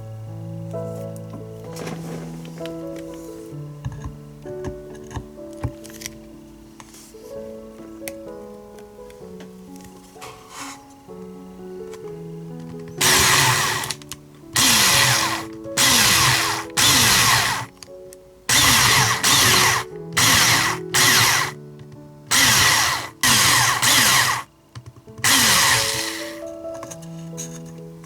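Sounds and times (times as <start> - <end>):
background music: 0.0 - 28.0
power drill short bursts: 13.0 - 14.0, 14.6 - 17.7, 18.5 - 21.6, 22.3 - 24.5, 25.2 - 26.4.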